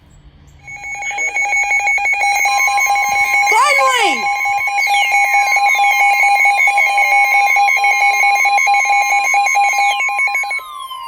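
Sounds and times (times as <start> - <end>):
steady high alert tone: 0.6 - 10.6
rapidly pulsing beep: 0.6 - 10.8.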